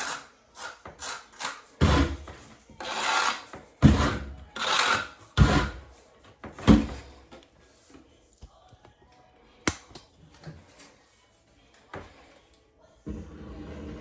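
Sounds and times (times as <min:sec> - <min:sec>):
rough scraping of tile: 0:00.0 - 0:08.1, 0:13.0 - 0:14.0.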